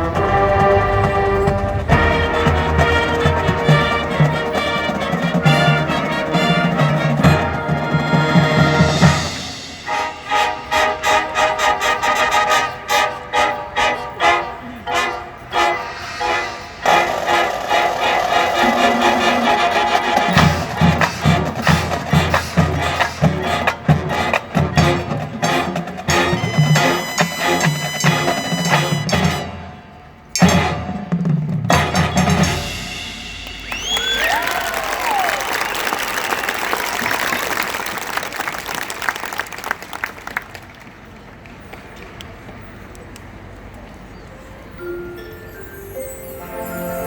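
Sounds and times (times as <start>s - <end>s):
brass and drum hits: 0.0s - 13.0s, 15.6s - 33.9s
marching band playing: 0.0s - 40.0s.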